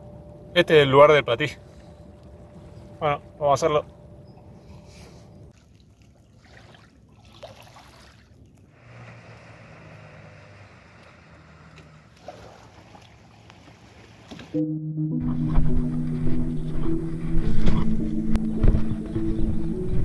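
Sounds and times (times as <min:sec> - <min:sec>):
gentle water noise: 0:05.5 - 0:14.5.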